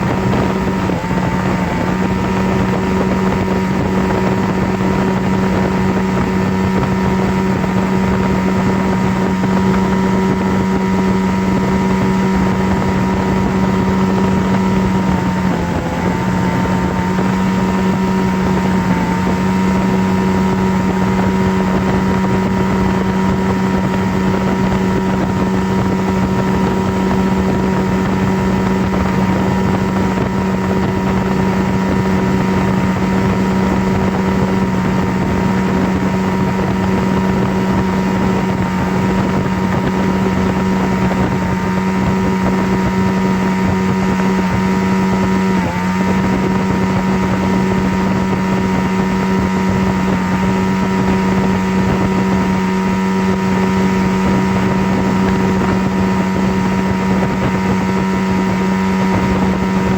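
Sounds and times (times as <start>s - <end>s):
motor drone: 0.0s - 59.9s.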